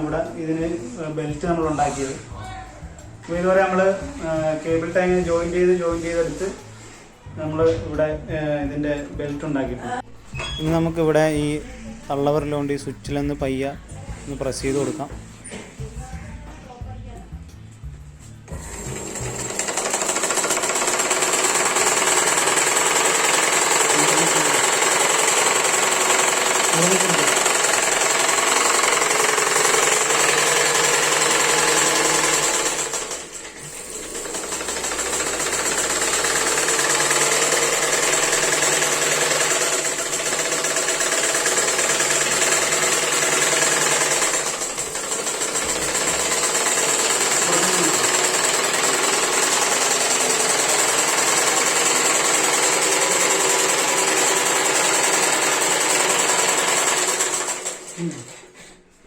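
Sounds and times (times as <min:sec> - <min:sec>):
sewing machine needle clattering: 0:19.2 - 0:33.2, 0:34.0 - 0:58.0.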